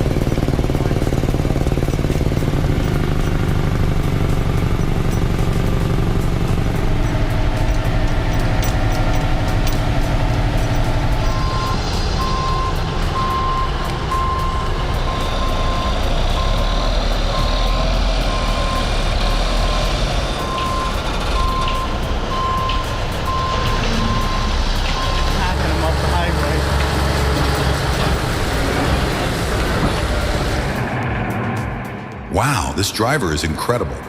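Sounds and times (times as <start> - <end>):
heavy truck engine running: 0.0 - 33.8
reversing alarm beeping: 8.4 - 26.6.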